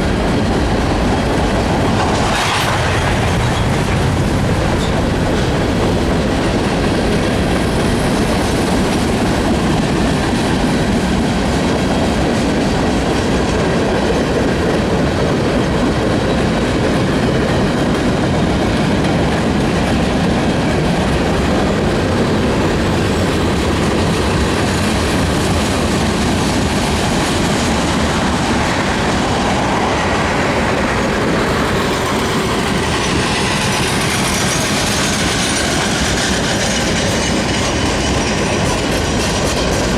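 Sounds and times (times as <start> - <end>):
freight train wheels rumbling: 0.0 - 39.9
wheels clacking over rail joints: 0.0 - 39.9.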